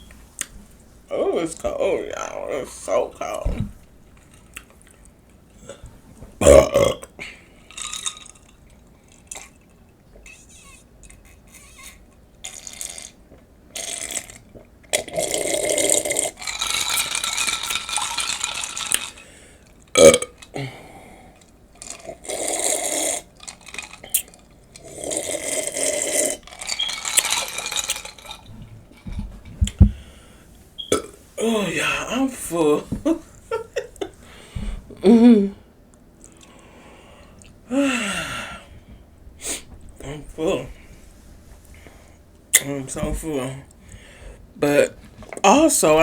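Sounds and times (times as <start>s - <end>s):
person burping loudly: 6.4s - 7.4s, 15.0s - 16.4s, 19.9s - 20.9s, 24.8s - 26.4s, 30.9s - 31.2s
breathy noise: 20.4s - 22.2s, 23.7s - 31.2s, 34.1s - 35.6s, 36.2s - 42.3s.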